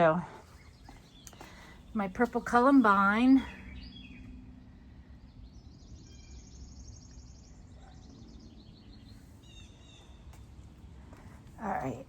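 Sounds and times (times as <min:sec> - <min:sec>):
low outdoor rumble: 0:00.0 - 0:12.0
songbirds trilling: 0:00.0 - 0:12.0
bird chirps: 0:02.8 - 0:10.4.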